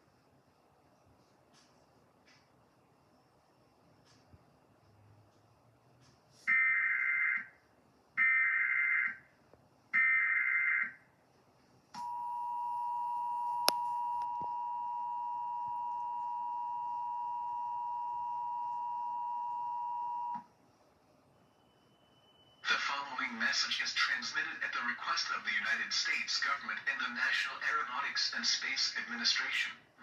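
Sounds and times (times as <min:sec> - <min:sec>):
steady two-tone attention signal: 0:12.0 - 0:20.3.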